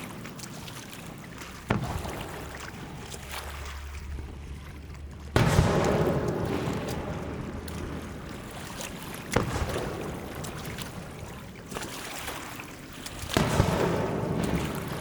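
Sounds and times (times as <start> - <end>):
fireworks bursting: 5.4 - 8.5, 9.2 - 11.1, 13.3 - 15.0
fireworks crackling: 5.4 - 11.1, 13.4 - 15.0.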